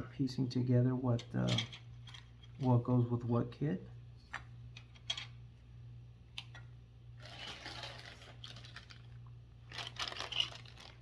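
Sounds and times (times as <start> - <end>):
plastic bag rustling: 7.2 - 11.0.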